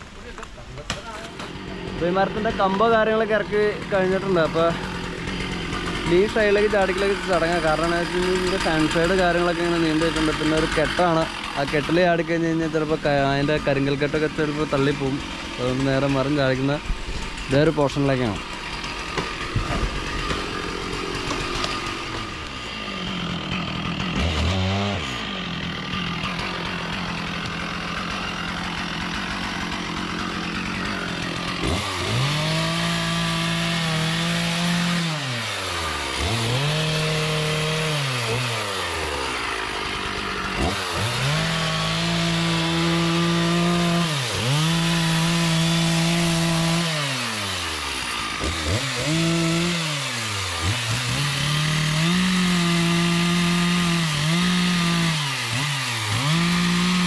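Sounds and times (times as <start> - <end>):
chainsaw cutting wood: 0.0 - 57.0.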